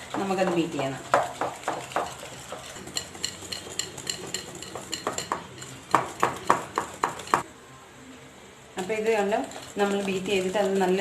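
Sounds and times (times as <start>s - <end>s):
utensil beating cream in bowl: 0.0s - 7.4s, 8.8s - 11.0s.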